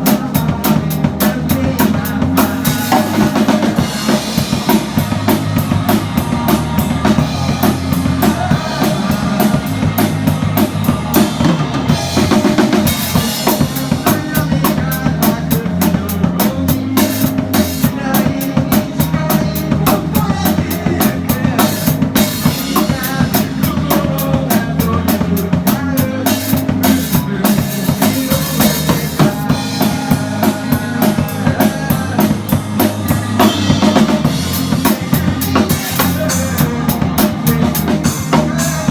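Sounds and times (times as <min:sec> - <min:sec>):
band playing live: 0:00.0 - 0:38.9
drum kit beat: 0:00.0 - 0:38.9.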